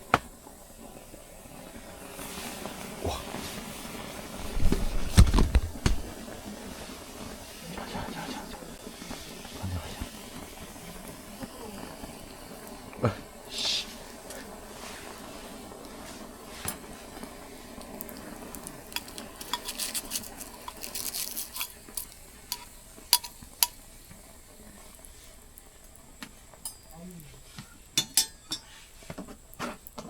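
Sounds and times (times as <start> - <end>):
faint sizzle: 0.0 - 30.0
utensil clicking on metal ladle: 17.8 - 23.8.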